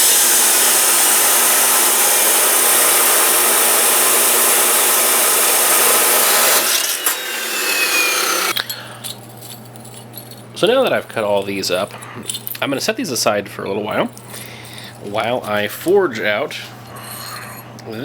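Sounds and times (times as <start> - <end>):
chop saw cutting steel: 0.0 - 8.6.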